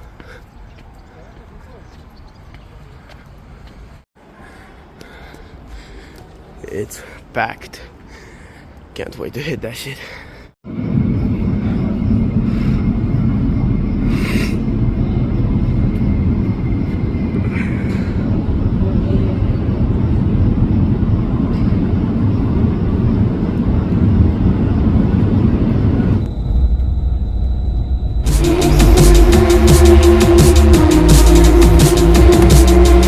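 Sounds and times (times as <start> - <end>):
train rumbling: 10.7 - 33.0
drum and bass music: 28.2 - 33.0.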